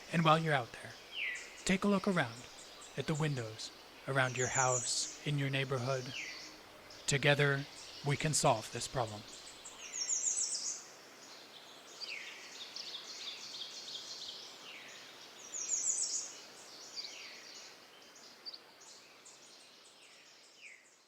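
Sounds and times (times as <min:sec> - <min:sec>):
high bird chirping: 0:00.0 - 0:10.8.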